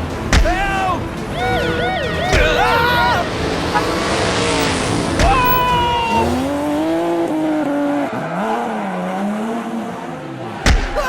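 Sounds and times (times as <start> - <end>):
vehicle motors whining: 0.0 - 11.0
sharp knock: 0.3 - 0.9, 5.2 - 5.6, 10.7 - 11.0.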